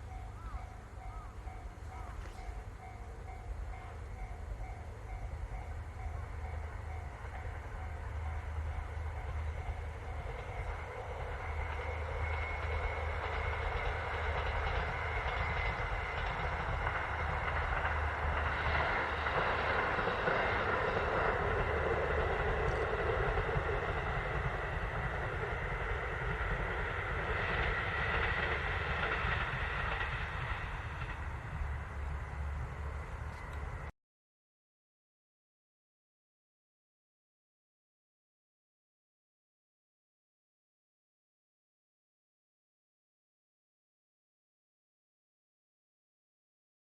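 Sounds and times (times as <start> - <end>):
diesel railcar engine hum: 0.0 - 33.9
train wheels on rails: 0.0 - 33.9.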